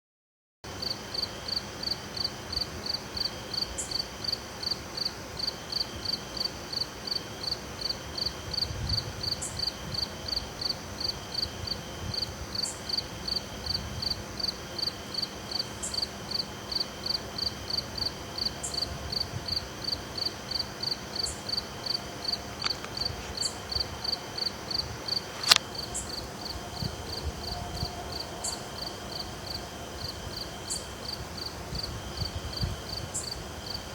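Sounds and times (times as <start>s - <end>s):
cricket chirping: 0.7s - 33.9s
insect trill: 0.7s - 33.9s
sharp click: 25.4s - 25.7s.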